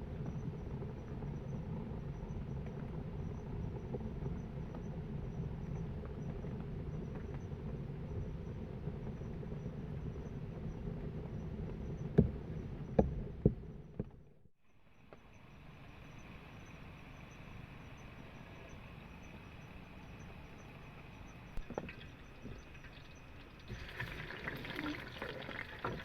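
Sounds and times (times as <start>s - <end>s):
insects chirring: 14.7s - 26.0s.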